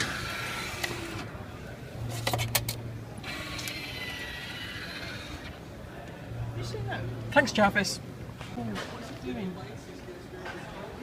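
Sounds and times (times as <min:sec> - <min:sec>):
vending machine motor whine: 0:00.0 - 0:05.8
mechanism clicks and clunks: 0:02.0 - 0:06.2.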